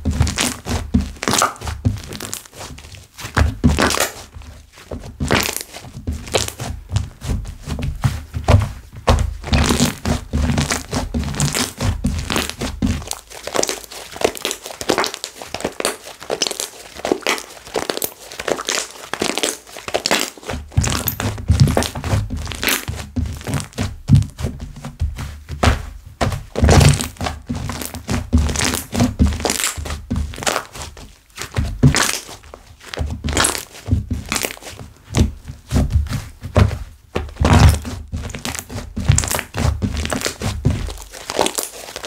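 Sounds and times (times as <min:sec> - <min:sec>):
dull thumps: 0:00.0 - 0:13.7, 0:20.6 - 0:30.7, 0:31.5 - 0:41.2
slime squeezed by hand: 0:01.2 - 0:02.6, 0:03.4 - 0:04.3, 0:10.6 - 0:23.8, 0:31.4 - 0:32.4, 0:37.4 - 0:42.0.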